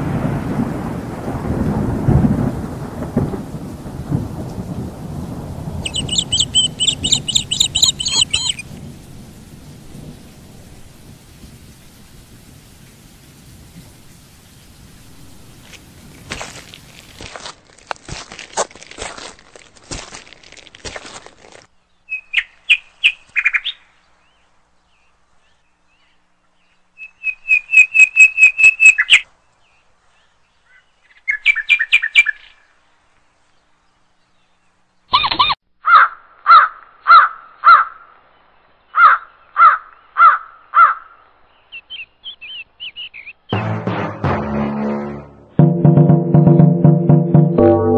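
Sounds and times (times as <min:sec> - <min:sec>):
quick high bird chirps: 0:05.8 - 0:08.7, 0:35.1 - 0:36.0
series of lower bird notes: 0:05.8 - 0:08.8, 0:41.6 - 0:47.9.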